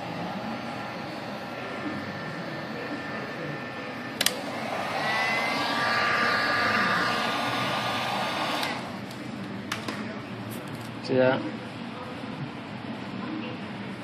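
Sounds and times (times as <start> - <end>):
heat gun blowing with fan whine: 0.0 - 9.2.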